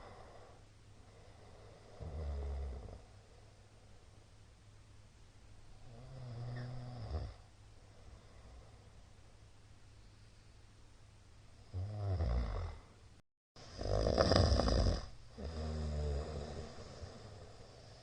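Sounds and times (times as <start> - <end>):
man snoring loudly: 1.7 - 3.0, 5.9 - 7.4, 11.7 - 12.8, 13.7 - 17.6.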